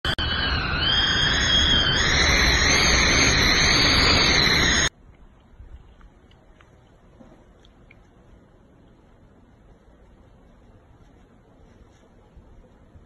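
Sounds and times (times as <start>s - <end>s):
strong wind rushing and whistling: 0.1s - 4.9s.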